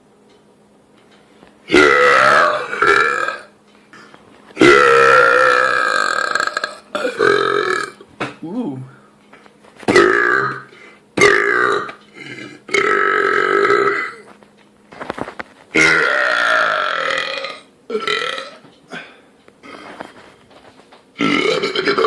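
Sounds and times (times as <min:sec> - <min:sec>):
man belching: 0:01.7 - 0:03.5, 0:04.6 - 0:08.0, 0:09.9 - 0:14.2, 0:15.8 - 0:19.8, 0:21.2 - 0:22.0.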